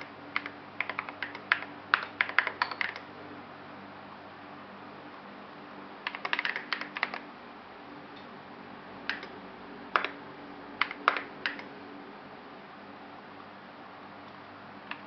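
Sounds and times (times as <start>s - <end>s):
mechanical keyboard keystrokes: 0.3s - 3.1s, 6.0s - 7.2s, 9.1s - 9.3s, 9.9s - 10.2s, 10.8s - 11.7s.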